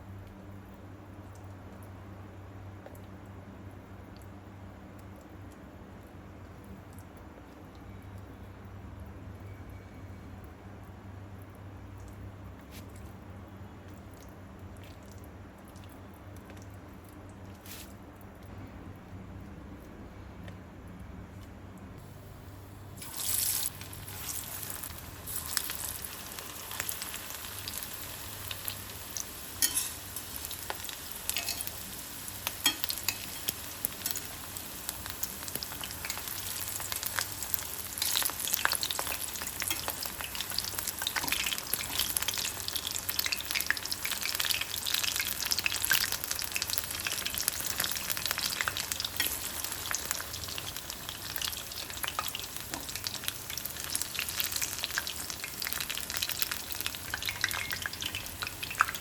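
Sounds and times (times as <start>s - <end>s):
food frying in hot oil: 22.0s - 59.0s.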